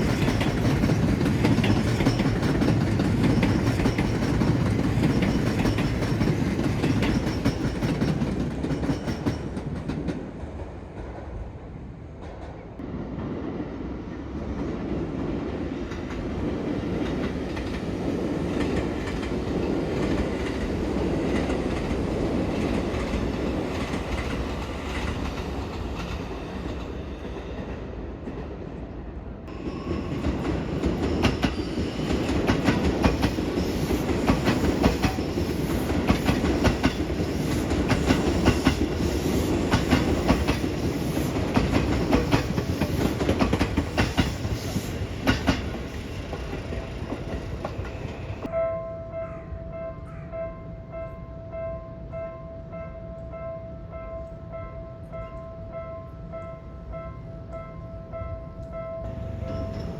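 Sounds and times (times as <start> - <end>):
wheels clacking over rail joints: 0.0 - 11.2, 29.6 - 48.5
electric train passing: 0.0 - 59.9.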